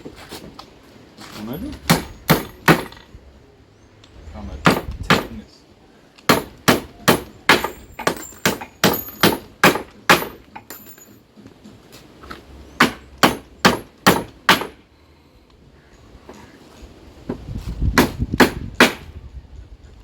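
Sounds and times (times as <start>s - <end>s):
hammer striking nails in wood: 1.9s - 3.1s, 4.6s - 5.4s, 6.2s - 10.8s, 12.8s - 14.8s, 18.0s - 19.1s.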